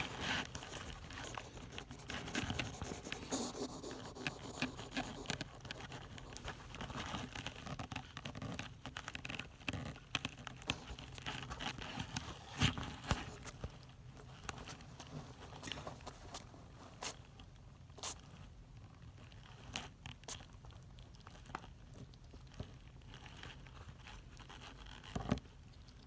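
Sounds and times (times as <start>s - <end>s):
hedgehog scrabbling and scratching: 0.0s - 17.4s.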